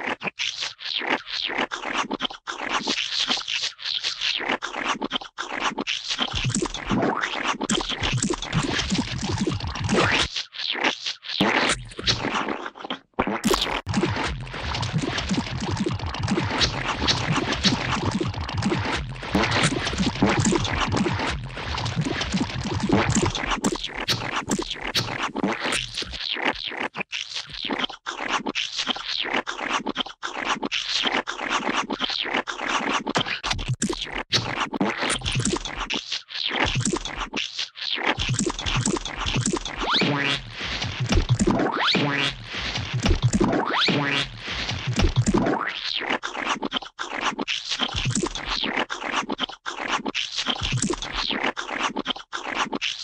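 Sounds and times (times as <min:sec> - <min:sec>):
wet slimy squelches and splats: 0:11.8 - 0:26.8.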